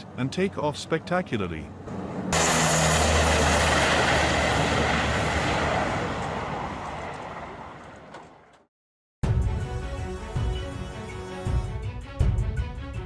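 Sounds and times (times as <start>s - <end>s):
aircraft engines roaring: 0.0s - 8.6s.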